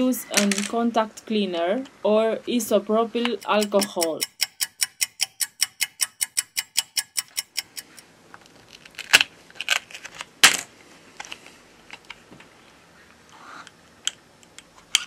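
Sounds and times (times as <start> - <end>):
rapid even ticking: 3.2 - 8.1
tools clicking and tapping on phone: 3.2 - 8.1.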